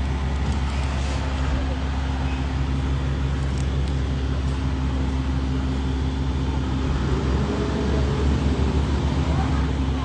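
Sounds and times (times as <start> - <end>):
constant hum: 0.0 - 10.0
low mechanical drone: 0.0 - 10.0.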